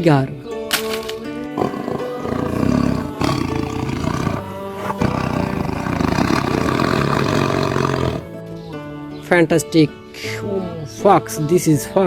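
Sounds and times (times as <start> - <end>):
tiger roaring: 1.6 - 8.4.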